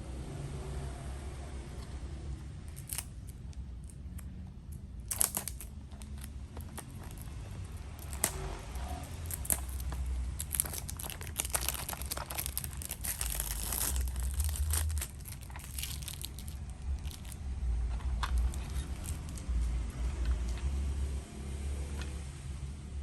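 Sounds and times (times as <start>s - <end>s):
plastic packaging crinkling and tearing: 2.7s - 4.3s, 5.0s - 19.8s.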